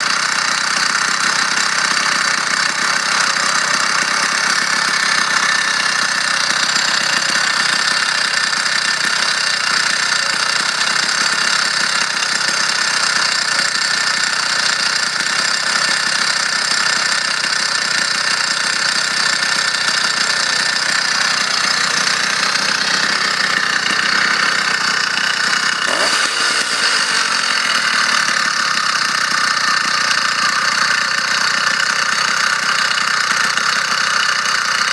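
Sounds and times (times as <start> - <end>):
small engine running with rattle: 0.0 - 34.9.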